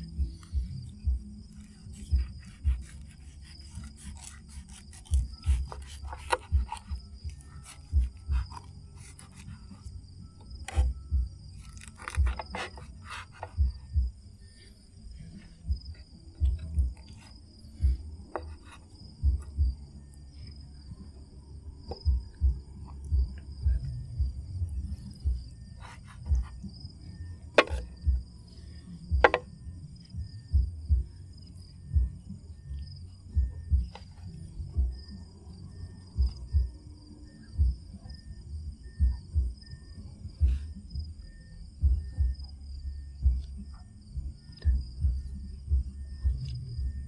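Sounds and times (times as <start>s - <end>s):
insects chirring: 0.0s - 47.0s
sharp clicks and knocks: 27.6s - 28.2s, 29.1s - 29.5s.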